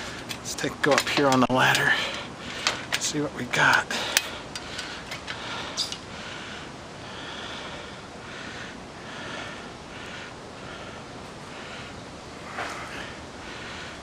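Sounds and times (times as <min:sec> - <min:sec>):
man breathing heavily: 0:00.0 - 0:14.0
ladder clicks and knocks: 0:00.3 - 0:03.2.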